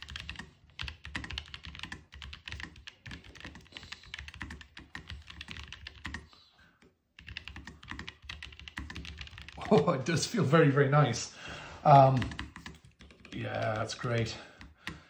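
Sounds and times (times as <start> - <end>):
mechanical keyboard typing: 0.0 - 6.3, 7.2 - 9.9, 12.1 - 15.0.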